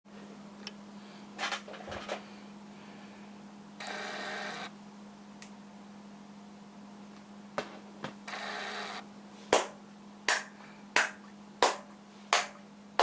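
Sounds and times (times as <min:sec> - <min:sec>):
steady low hum: 0:00.1 - 0:13.0
finger snaps or claps: 0:09.6 - 0:12.6.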